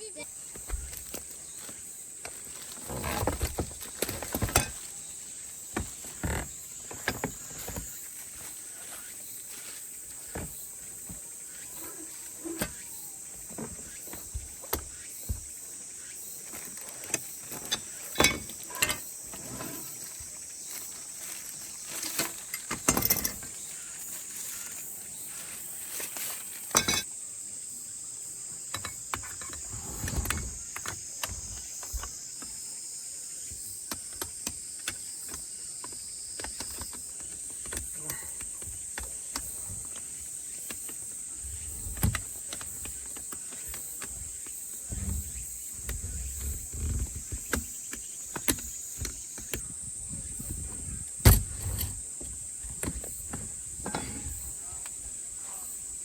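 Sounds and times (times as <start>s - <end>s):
objects being handled: 16.4s - 27.1s, 50.3s - 54.9s.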